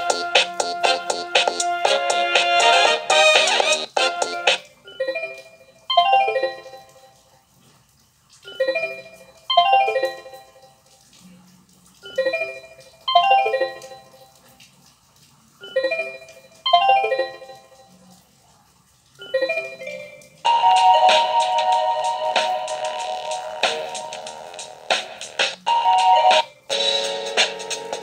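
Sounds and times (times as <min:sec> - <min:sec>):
bell-like ringtone chime: 0:04.9 - 0:07.2, 0:08.5 - 0:10.7, 0:12.1 - 0:14.3, 0:15.6 - 0:17.9, 0:19.2 - 0:24.4, 0:25.7 - 0:27.8.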